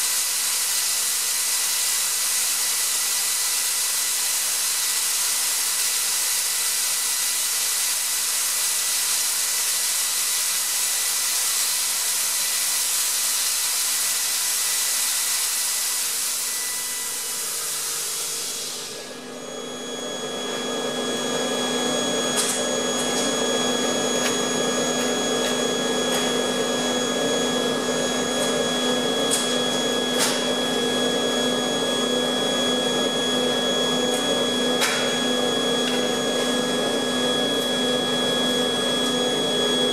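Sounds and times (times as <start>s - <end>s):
air compressor humming: 12.1s - 39.9s
rushing hiss of air: 12.9s - 19.2s.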